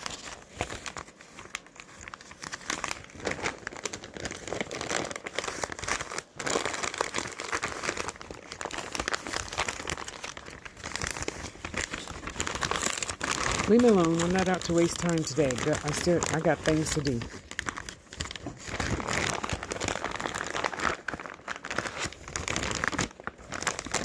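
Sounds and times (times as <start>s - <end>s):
plastic bag crinkling: 0.0s - 24.0s.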